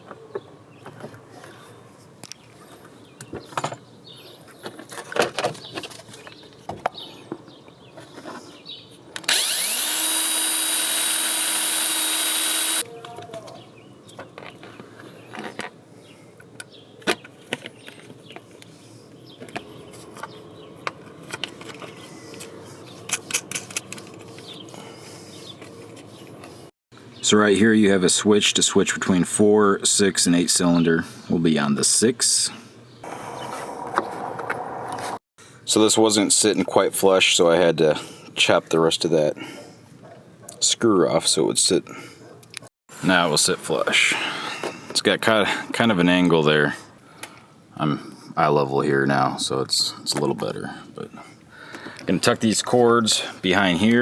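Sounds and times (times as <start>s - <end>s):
power drill boring through plastic: 9.3s - 12.8s
clicks and knocks of parts handled: 19.4s - 24.6s.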